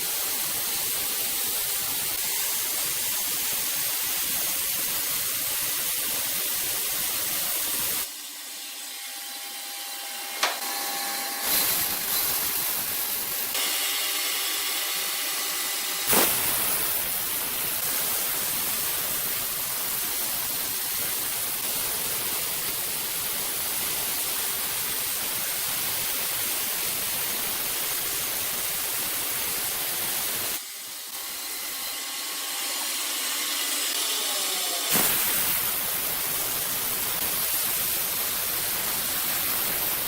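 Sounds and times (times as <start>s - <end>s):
steady hiss: 15.5s - 31.4s, 34.9s - 40.0s.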